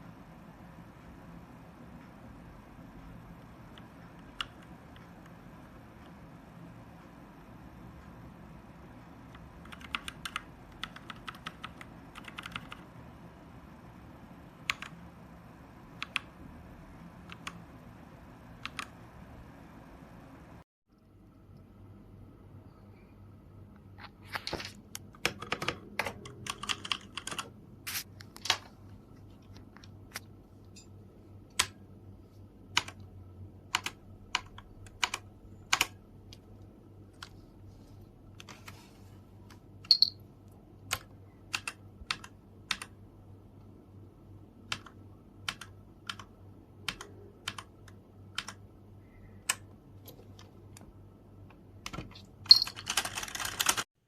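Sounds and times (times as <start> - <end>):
mechanical keyboard typing: 3.5 - 5.4, 9.2 - 13.0, 14.6 - 15.0, 16.0 - 16.4, 17.2 - 17.7, 18.6 - 19.0, 25.0 - 27.6, 32.7 - 33.0, 33.6 - 36.4, 40.9 - 43.0, 44.6 - 48.7, 51.8 - 53.9.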